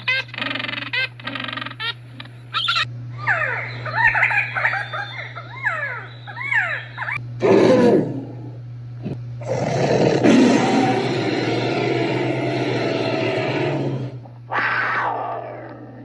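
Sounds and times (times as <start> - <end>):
birds chirping and chattering: 0.0 - 7.4.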